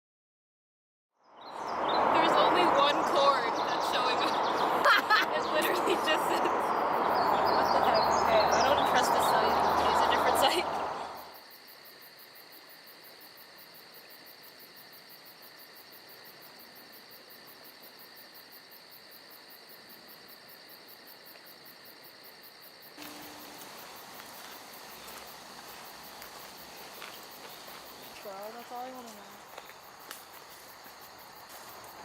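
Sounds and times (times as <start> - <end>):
insects chirping: 1.2 - 32.0
noisy outdoor ambience: 1.2 - 32.0
short low tone: 23.0 - 23.9.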